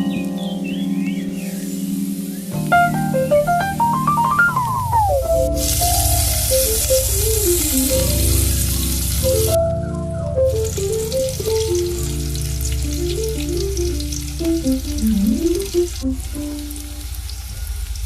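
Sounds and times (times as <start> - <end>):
background music: 0.0 - 17.2
food sizzling in hot oil: 1.6 - 2.7, 5.0 - 9.6, 10.5 - 18.0.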